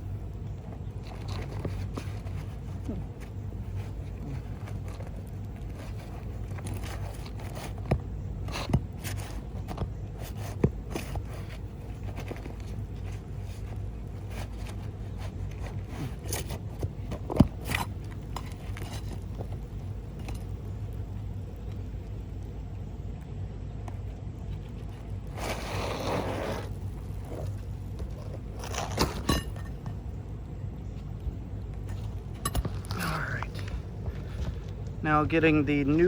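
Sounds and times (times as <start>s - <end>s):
steady low rumble: 0.0s - 36.0s
scraping on roof: 25.2s - 29.9s.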